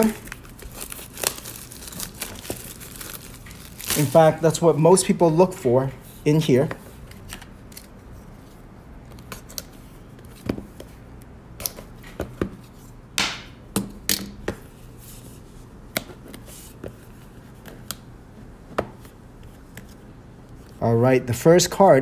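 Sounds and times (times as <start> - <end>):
packaging clicks and crinkles: 0.0 - 4.3
packaging ripping: 0.0 - 4.4.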